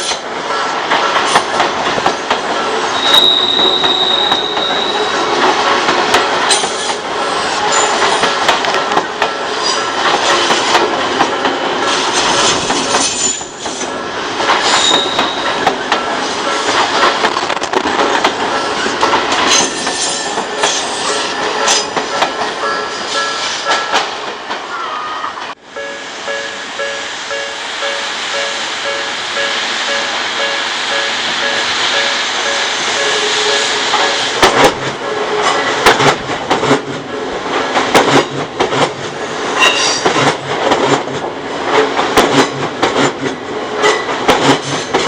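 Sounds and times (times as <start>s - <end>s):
crossing warning bell ringing: 0.0s - 10.5s, 14.7s - 17.4s, 18.2s - 34.4s, 35.0s - 35.8s, 39.6s - 40.1s
train wheels clattering over rail joints: 0.0s - 22.5s, 33.8s - 45.0s
wheel flange squeal: 2.9s - 5.2s, 14.7s - 15.6s.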